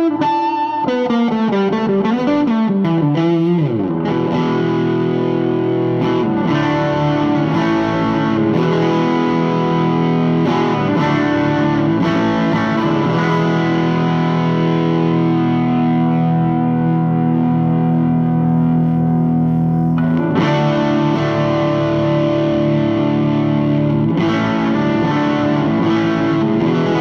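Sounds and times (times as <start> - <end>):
distorted electric guitar chords: 0.0 - 27.0.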